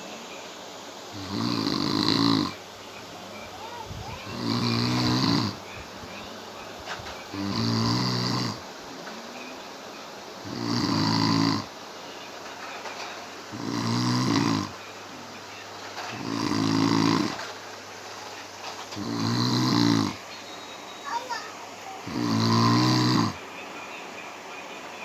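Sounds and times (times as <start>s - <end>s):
person snoring loudly: 1.1s - 2.6s, 4.0s - 5.6s, 7.3s - 8.6s, 10.4s - 11.7s, 13.5s - 14.8s, 16.1s - 17.5s, 18.9s - 20.2s, 22.0s - 23.4s.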